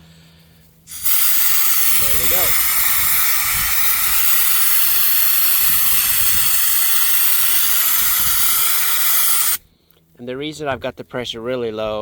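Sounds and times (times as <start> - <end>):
spray gun hissing: 0.9 - 9.6.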